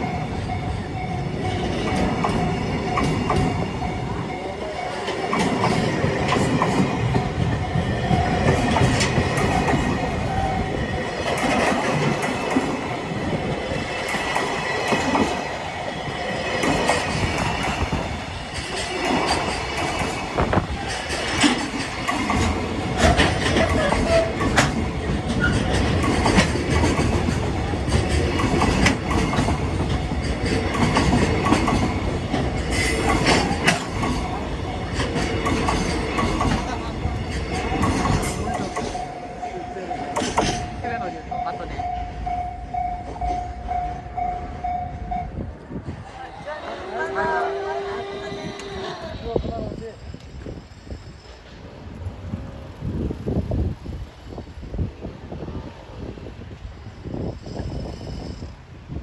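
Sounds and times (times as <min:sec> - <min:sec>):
freight wagons rumbling: 0:00.0 - 0:55.4
wheels clicking over rail joints: 0:00.5 - 0:40.8.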